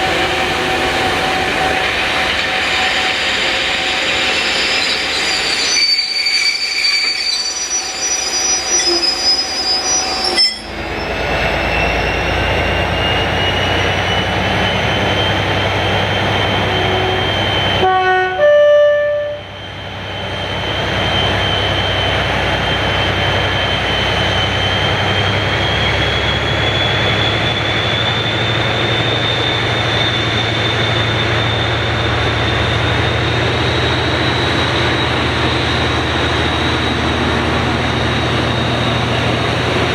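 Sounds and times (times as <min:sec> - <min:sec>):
diesel locomotive engine rumble: 0:00.0 - 0:39.9
two-tone train horn: 0:16.6 - 0:19.6.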